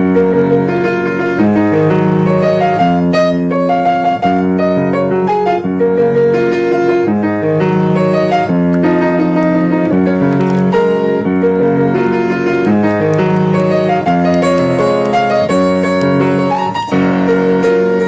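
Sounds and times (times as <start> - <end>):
piano music: 0.0 - 18.0.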